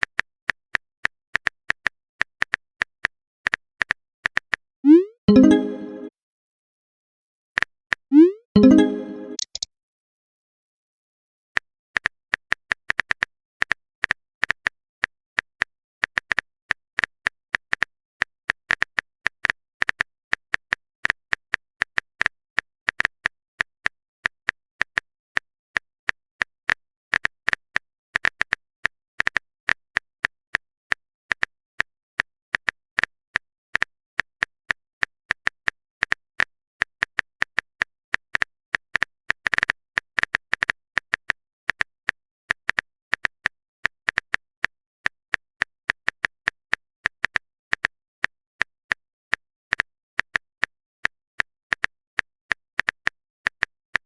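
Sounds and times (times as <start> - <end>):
phone keyboard clicks: 8.6 - 9.7.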